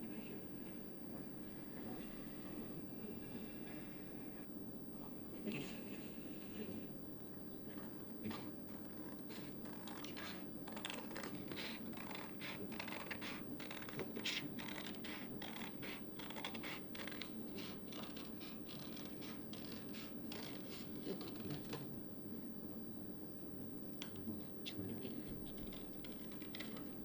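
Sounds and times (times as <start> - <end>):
paper clicks snips and scratches: 8.7 - 21.9, 25.5 - 27.0.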